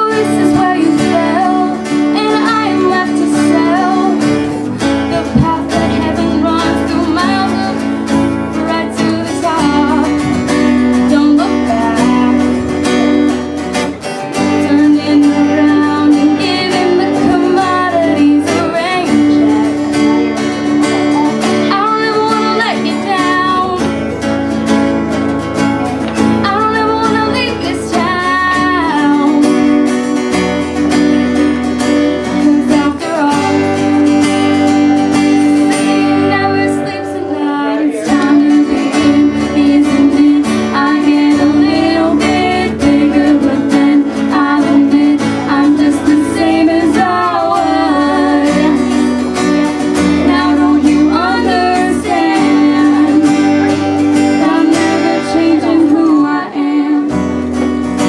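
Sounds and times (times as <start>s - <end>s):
woman singing: 0.0s - 13.4s, 14.3s - 24.2s, 26.4s - 30.4s, 31.3s - 57.6s
strummed acoustic guitar: 0.0s - 58.0s.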